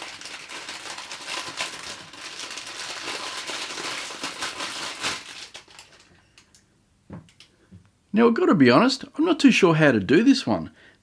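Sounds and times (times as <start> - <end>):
plastic packaging crinkling: 0.0 - 6.6.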